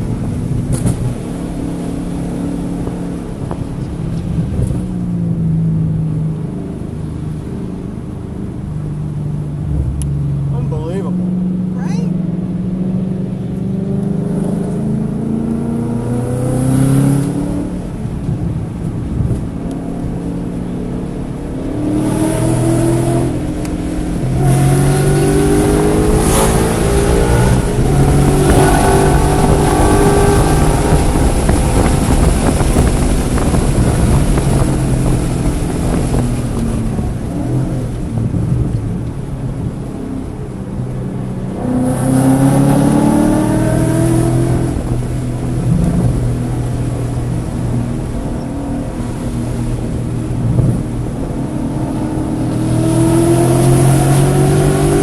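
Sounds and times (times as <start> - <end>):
tyre and wind noise: 0.0 - 5.6, 16.8 - 55.0
car engine accelerating hard: 0.0 - 55.0.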